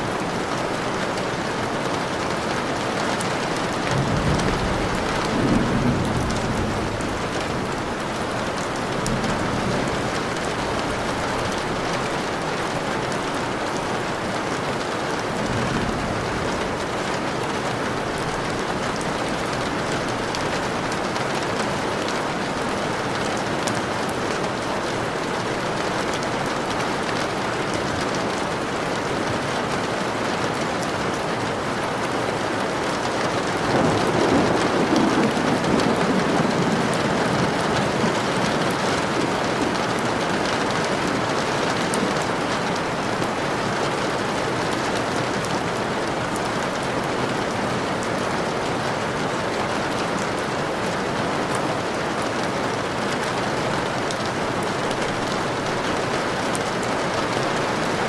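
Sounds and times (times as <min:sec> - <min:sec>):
steady rain falling: 0:00.0 - 0:58.0
thunder rumble: 0:01.8 - 0:14.2, 0:15.3 - 0:21.2, 0:33.4 - 0:44.2.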